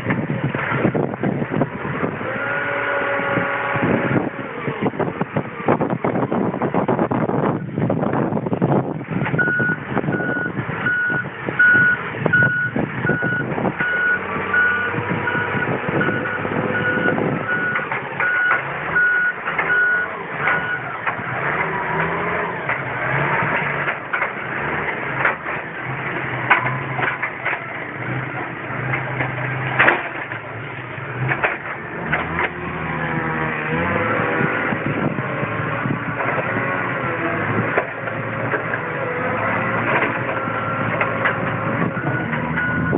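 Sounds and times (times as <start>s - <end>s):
diesel engine running under load: 0.0s - 42.9s
reversing alarm beeping: 9.4s - 20.9s, 42.0s - 42.9s.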